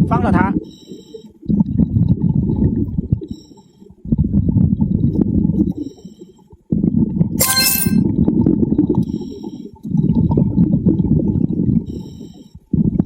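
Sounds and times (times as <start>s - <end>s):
exhaled bubbles rumbling: 1.6s - 3.2s, 4.1s - 5.7s, 10.0s - 11.9s
sharp high-pitched sound: 7.4s - 8.0s.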